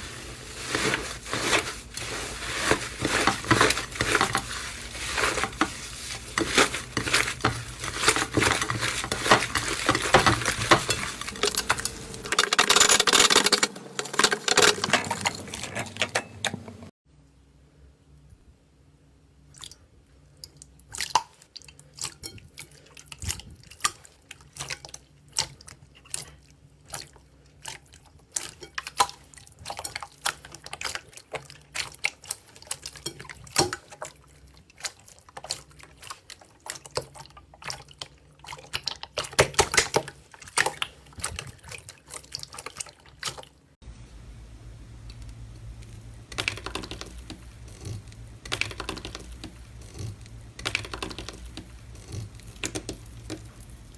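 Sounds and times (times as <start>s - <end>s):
steady low hum: 43.8s - 53.9s.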